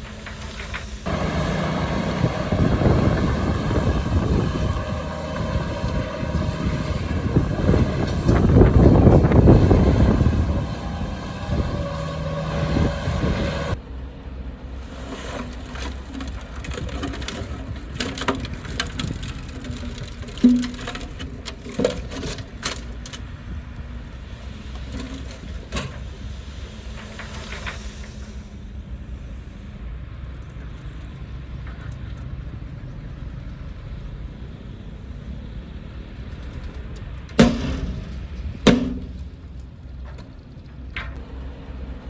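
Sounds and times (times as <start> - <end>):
diesel machine low rumble: 0.0 - 42.0
sharp knocks: 37.4 - 39.4.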